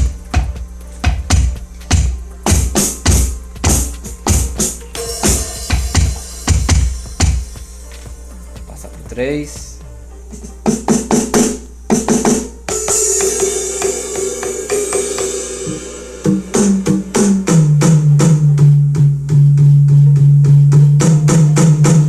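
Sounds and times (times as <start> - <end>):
electronic drum hits: 0.0 - 22.0
ringing crash cymbal hit: 5.0 - 8.0, 12.7 - 17.1.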